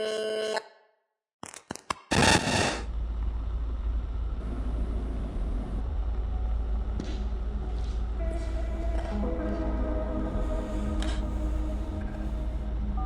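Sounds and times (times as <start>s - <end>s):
loud burst of noise: 2.0s - 5.9s
steady low rumble: 2.1s - 13.0s.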